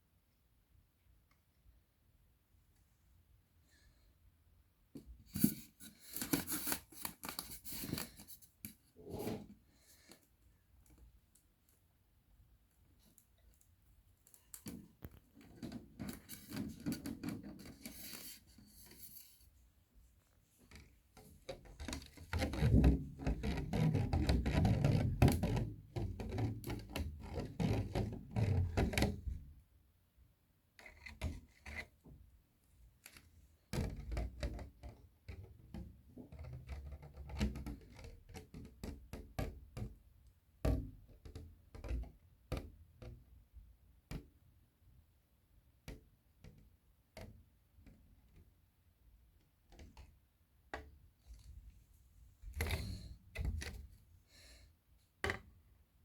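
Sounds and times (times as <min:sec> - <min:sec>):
plastic lid rubbing and scraping: 0:05.3 - 0:08.4, 0:09.0 - 0:09.6, 0:21.6 - 0:29.3.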